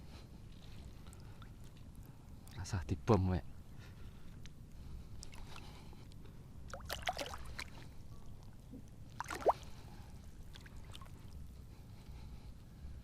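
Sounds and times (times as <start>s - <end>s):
shallow water sloshing and splashing: 0.4s - 2.6s, 4.8s - 11.7s
water plop: 6.7s - 7.8s, 9.1s - 9.7s.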